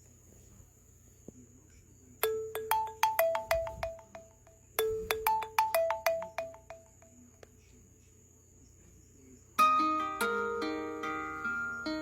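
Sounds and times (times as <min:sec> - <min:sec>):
mobile phone ringtone: 0:02.2 - 0:07.2.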